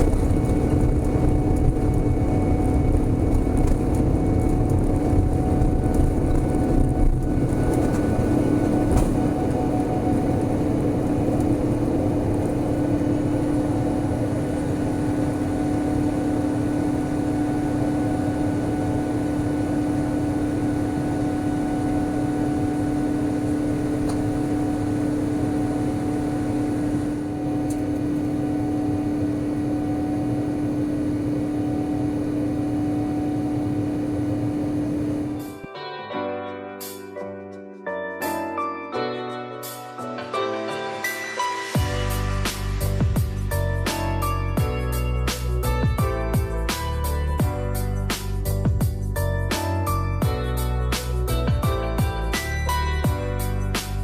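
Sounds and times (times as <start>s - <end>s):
jet engine drone: 0.0s - 35.7s.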